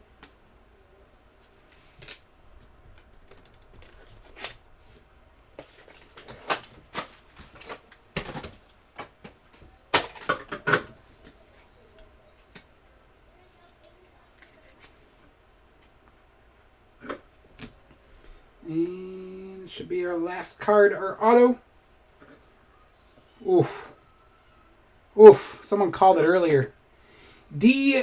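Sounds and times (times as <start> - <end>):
trading cards tapping and clicking: 1.6 - 5.0.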